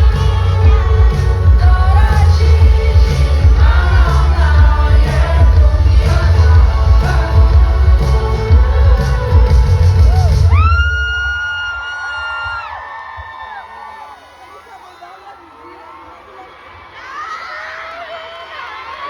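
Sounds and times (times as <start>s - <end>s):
person singing: 0.0s - 10.8s
live pop music through a pa: 0.0s - 19.0s.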